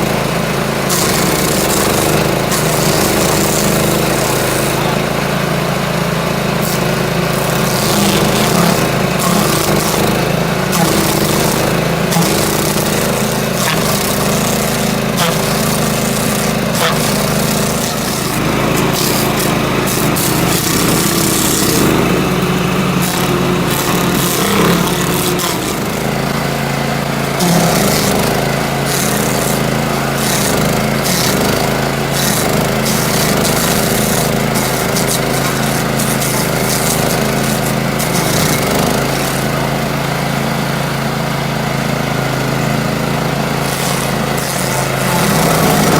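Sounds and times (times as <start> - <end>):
cutter wheel grinding wood: 0.0 - 45.9
small engine running under load: 0.0 - 45.9
wood chips crackling: 6.6 - 37.3.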